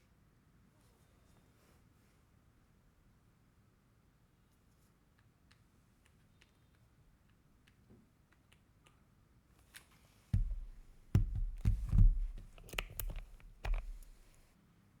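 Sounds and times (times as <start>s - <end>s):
keyboard and packaging handled: 10.4s - 14.5s.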